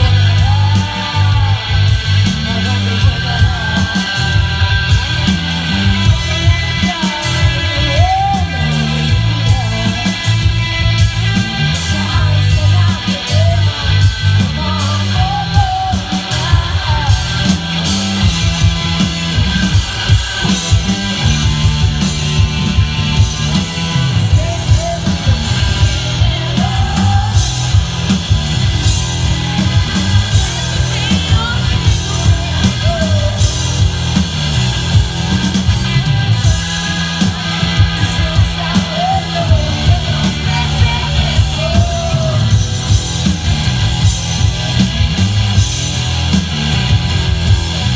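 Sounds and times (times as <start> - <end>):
person singing: 0.0 - 19.0, 23.2 - 33.9, 35.8 - 42.9
rock band playing live: 0.0 - 47.9.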